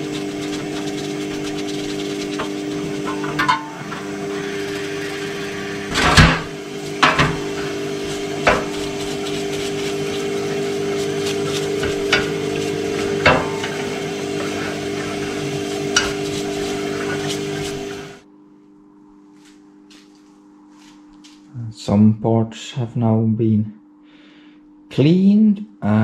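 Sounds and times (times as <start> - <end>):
steady machine hum: 0.0 - 26.0
parts knocking and clattering: 2.3 - 4.2, 5.9 - 9.4.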